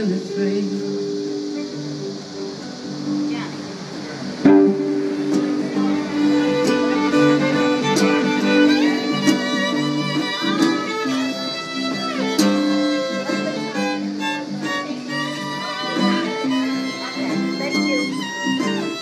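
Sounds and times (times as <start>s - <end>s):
guitar strumming: 0.0s - 19.0s
fiddle melody with sliding notes: 4.4s - 19.0s.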